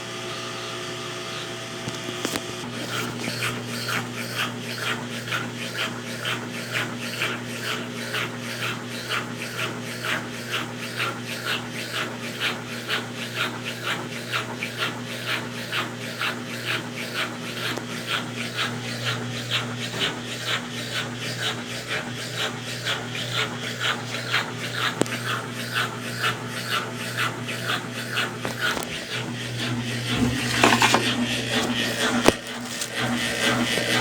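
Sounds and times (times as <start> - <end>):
washing machine motor hum: 0.0 - 9.2, 14.3 - 34.0.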